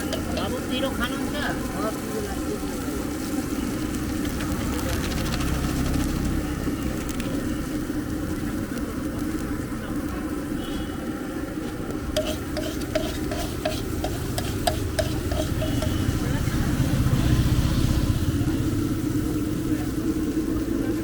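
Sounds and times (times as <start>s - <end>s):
metal utensil clinking against pan: 0.0s - 0.6s, 12.2s - 16.1s
food frying and sizzling in pan: 0.0s - 1.6s, 12.0s - 19.5s.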